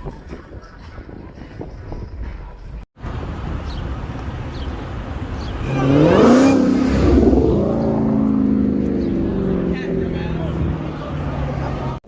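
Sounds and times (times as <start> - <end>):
car engine revving: 3.6 - 12.0.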